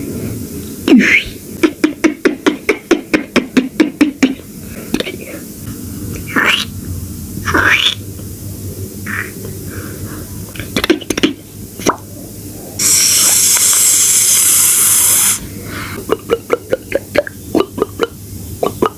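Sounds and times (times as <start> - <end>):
mouth spray-like hiss: 0.0 - 16.1
mouth clicks: 10.6 - 12.1.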